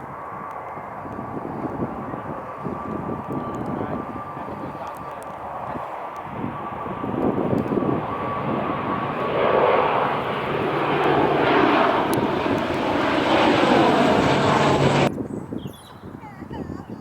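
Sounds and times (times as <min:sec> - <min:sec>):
airliner engines roaring: 0:00.0 - 0:15.1.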